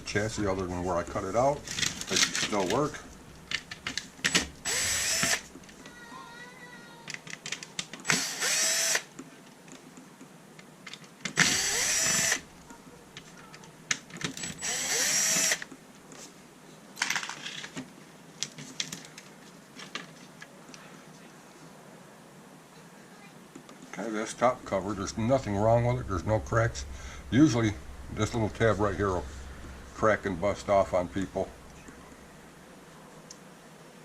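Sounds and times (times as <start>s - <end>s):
powered screwdriver running: 4.3s - 5.5s, 8.0s - 9.1s, 11.4s - 12.4s, 14.4s - 15.7s.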